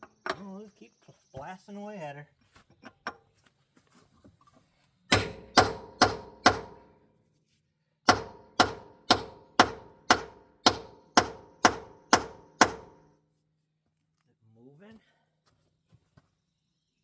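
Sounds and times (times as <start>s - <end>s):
hammer striking metal: 5.1s - 6.9s, 8.1s - 13.0s.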